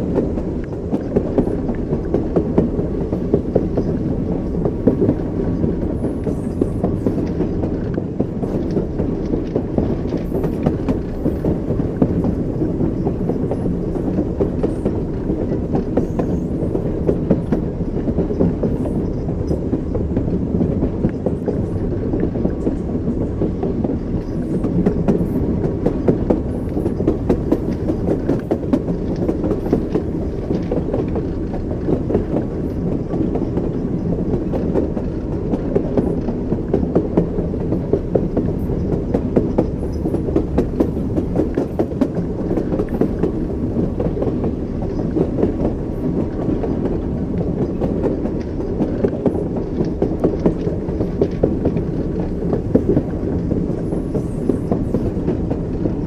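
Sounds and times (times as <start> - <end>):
train wheels over rail joints: 0.0 - 56.0.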